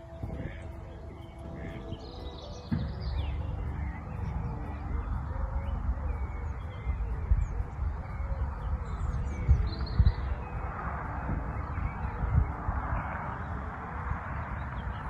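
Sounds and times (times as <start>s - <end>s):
low thumps: 0.0s - 13.1s
birds calling: 0.0s - 15.0s
steady low rumbling: 0.0s - 15.0s.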